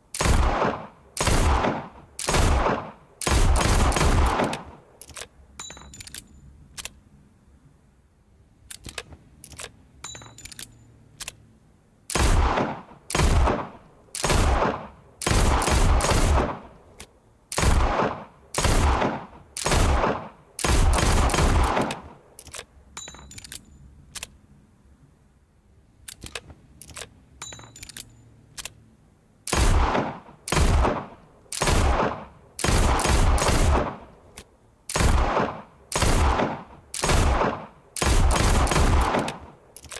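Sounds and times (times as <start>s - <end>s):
revolver gunshots: 0.2s - 4.8s, 12.1s - 16.8s, 17.5s - 22.2s, 29.5s - 34.2s, 34.9s - 39.6s
small sharp clicks: 3.9s - 7.0s, 8.6s - 11.5s, 21.6s - 24.4s, 26.0s - 28.8s, 34.3s - 35.1s, 38.7s - 39.9s.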